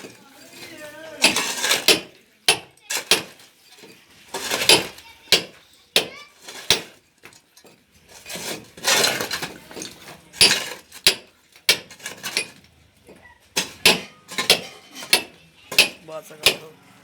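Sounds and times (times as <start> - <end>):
rattling scrapes: 0.0 - 2.2, 2.8 - 16.7
hand tools knocking on masonry: 1.2 - 3.4, 4.6 - 7.0, 9.8 - 16.7.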